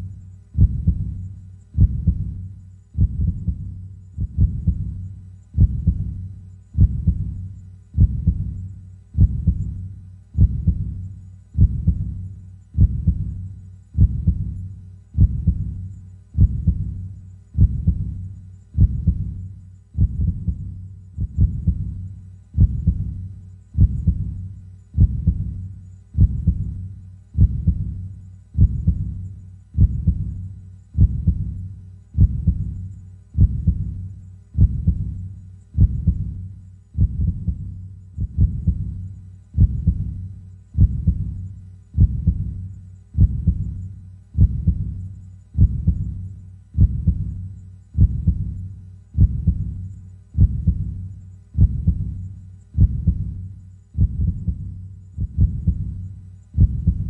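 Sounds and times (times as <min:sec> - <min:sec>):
heartbeat: 0:00.0 - 0:57.0.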